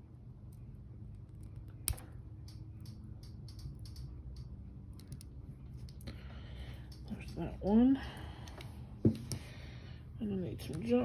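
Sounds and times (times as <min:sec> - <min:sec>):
sharp plier snap: 0:01.9 - 0:04.1.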